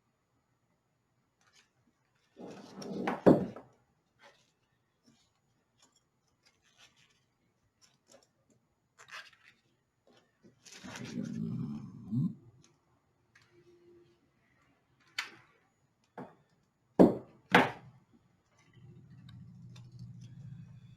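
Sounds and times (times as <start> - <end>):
rubbing rustle of parts: 1.4 - 3.2, 4.0 - 11.4.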